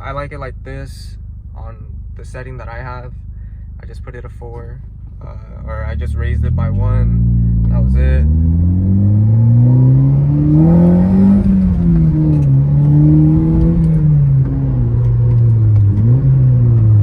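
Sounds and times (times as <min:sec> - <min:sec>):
car engine revving loud: 0:05.8 - 0:17.0.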